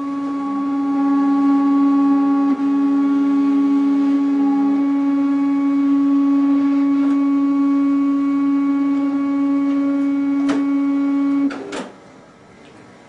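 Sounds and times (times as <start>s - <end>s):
card printer whining: 0.0s - 11.9s
printer click: 9.7s - 10.7s.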